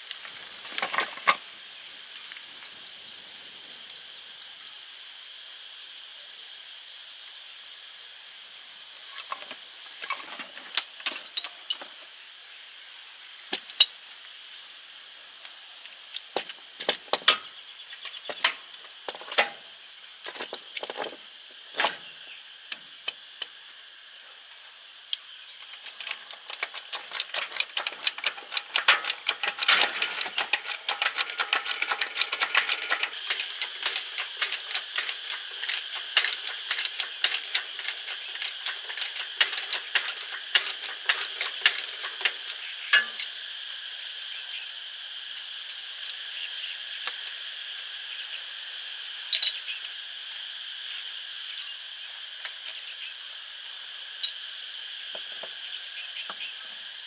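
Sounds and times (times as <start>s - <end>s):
insect chirring: 0.0s - 5.3s, 10.9s - 57.0s
metal tools clinking and rattling: 0.2s - 1.4s, 9.2s - 12.0s, 16.4s - 21.2s, 25.6s - 43.4s.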